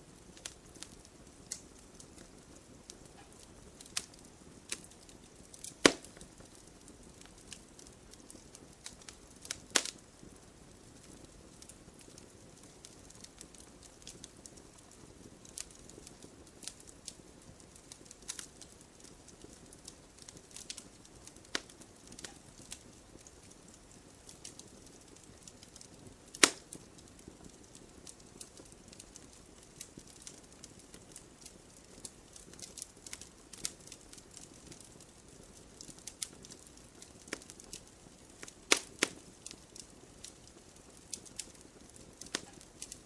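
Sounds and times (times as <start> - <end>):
campfire crackling: 0.0 - 43.0
loud fire pop: 5.8 - 6.2.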